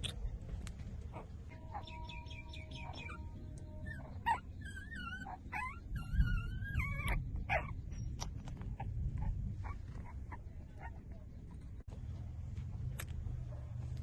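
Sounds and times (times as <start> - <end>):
puppies whimpering and squeaking: 1.0 - 11.1.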